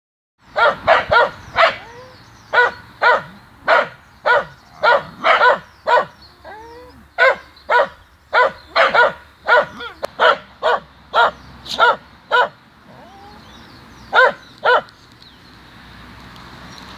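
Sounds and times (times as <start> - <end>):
dog barking: 0.6 - 13.2, 14.1 - 14.9
dog whining: 1.7 - 2.2, 6.3 - 7.1, 12.9 - 13.6.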